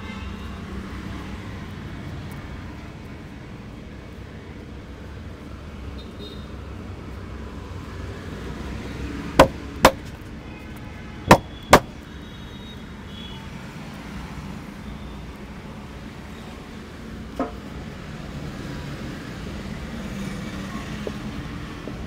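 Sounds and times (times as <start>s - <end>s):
street traffic hum: 0.0s - 22.0s.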